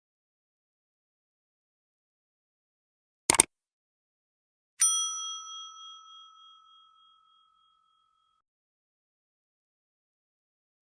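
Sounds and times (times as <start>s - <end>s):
bell ding ringing: 4.8s - 8.4s.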